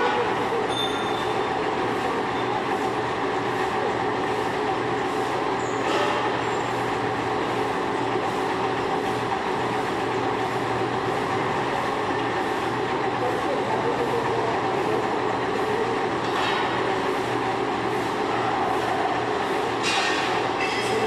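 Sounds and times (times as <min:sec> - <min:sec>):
brief high squeal: 0:00.7 - 0:01.4.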